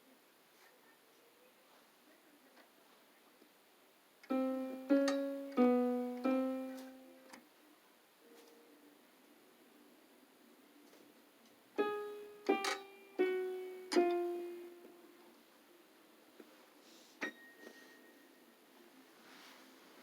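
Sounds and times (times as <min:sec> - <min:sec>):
electronic keyboard piano notes: 0:04.3 - 0:07.4, 0:11.8 - 0:15.3.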